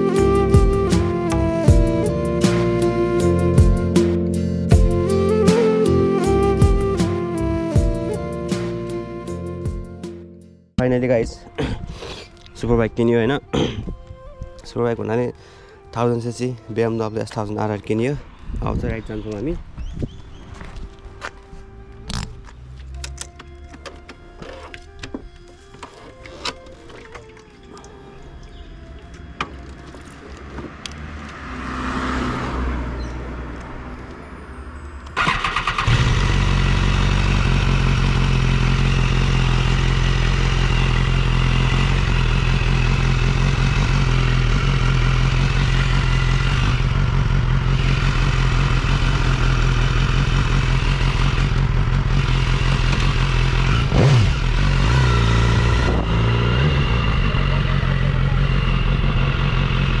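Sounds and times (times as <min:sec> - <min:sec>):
motorcycle engine idling: 0:35.2 - 1:00.0.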